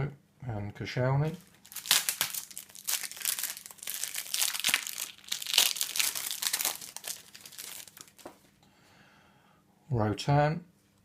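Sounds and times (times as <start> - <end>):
card pack wrapper crinkling: 1.3 - 8.4.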